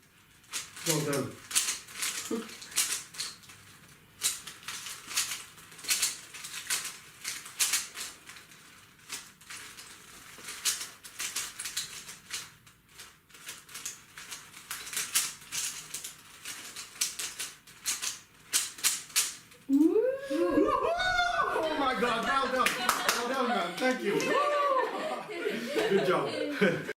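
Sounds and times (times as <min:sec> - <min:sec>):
puzzle cube clicking and rattling: 0:00.2 - 0:19.6.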